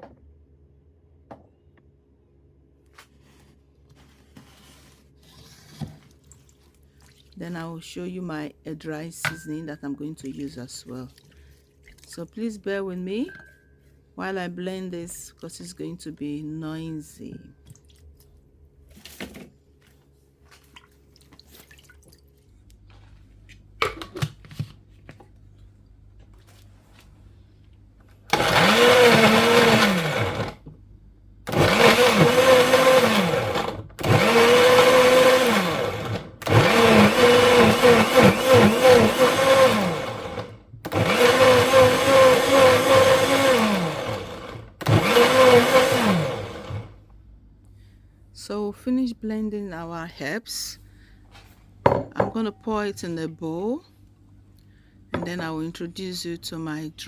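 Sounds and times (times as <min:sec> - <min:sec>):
blender motor pulsing: 0:28.3 - 0:30.6, 0:31.5 - 0:47.0.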